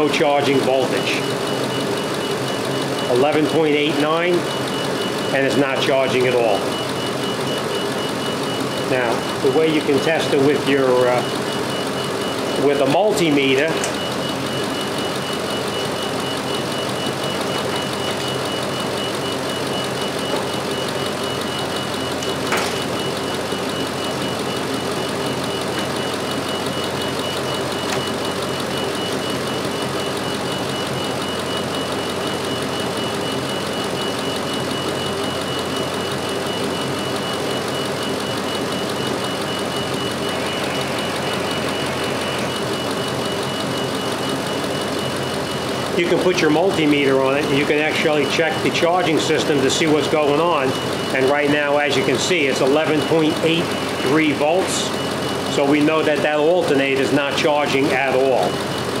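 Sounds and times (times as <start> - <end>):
pickup engine idling: 13.9 - 46.0, 50.3 - 51.6, 52.6 - 55.5
thin high whine: 36.8 - 45.2.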